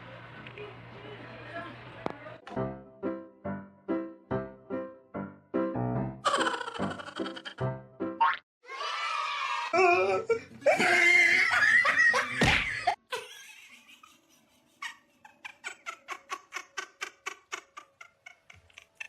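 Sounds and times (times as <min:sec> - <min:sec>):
loud human laughter: 0:10.3 - 0:19.0.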